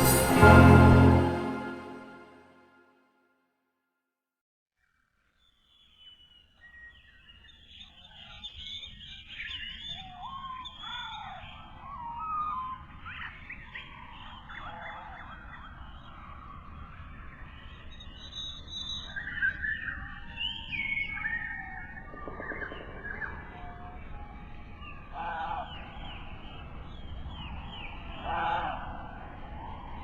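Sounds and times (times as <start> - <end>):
birds chirping and whistling: 6.1 - 28.3
steady low rush: 21.9 - 26.0.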